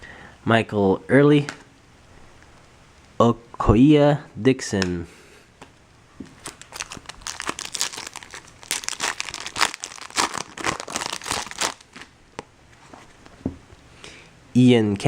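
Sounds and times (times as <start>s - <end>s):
foil wrapper crinkling and tearing: 6.4s - 12.1s.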